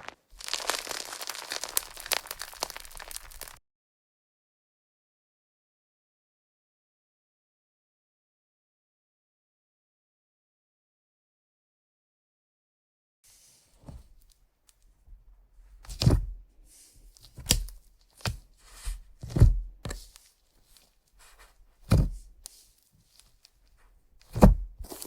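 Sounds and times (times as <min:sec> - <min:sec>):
slime squelching: 0:00.0 - 0:03.6.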